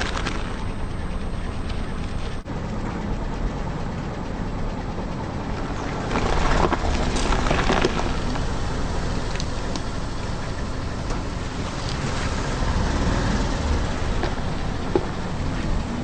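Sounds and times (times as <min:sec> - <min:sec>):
tyres crunching objects: 0:00.0 - 0:02.4, 0:05.9 - 0:10.1
car engine running: 0:00.0 - 0:16.0.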